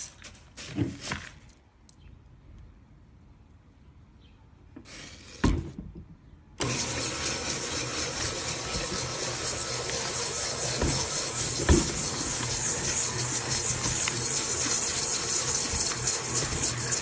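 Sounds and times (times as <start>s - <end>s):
electric hand mixer motor: 6.6s - 17.0s
knock: 10.8s - 12.0s.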